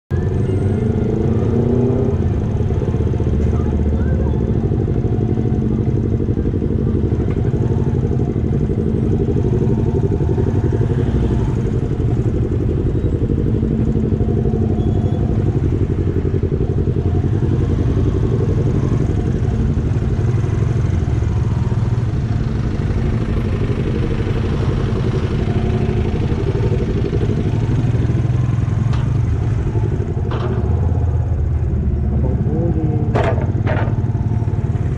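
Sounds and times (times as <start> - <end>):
motorcycle engine rumbling: 0.1 - 34.9.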